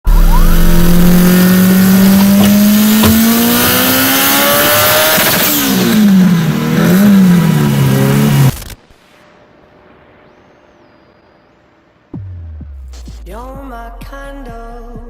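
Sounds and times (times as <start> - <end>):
car engine accelerating: 0.0 - 8.8.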